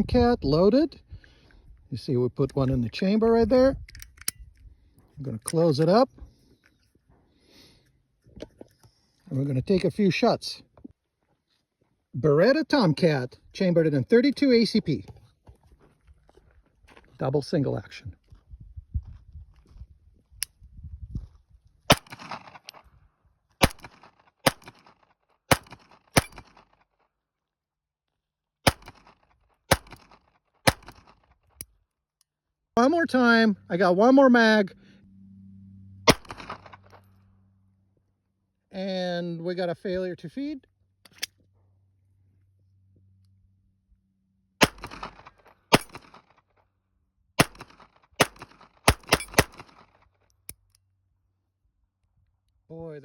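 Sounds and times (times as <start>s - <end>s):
pistol shots: 21.9s - 22.6s, 23.6s - 26.7s, 28.6s - 31.2s, 36.1s - 36.8s, 44.6s - 46.3s, 47.4s - 49.9s.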